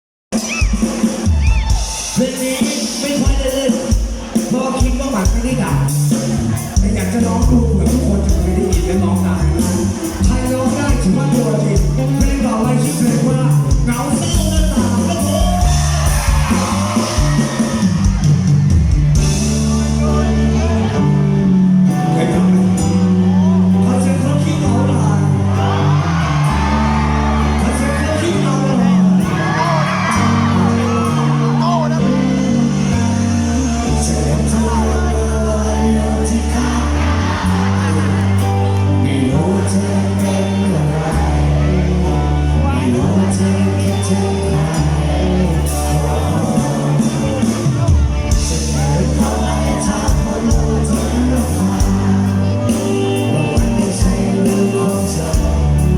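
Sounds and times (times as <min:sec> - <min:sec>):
live band music: 0:00.3 - 0:55.9
sustained bass notes: 0:00.3 - 0:55.9
person singing: 0:19.2 - 0:55.9.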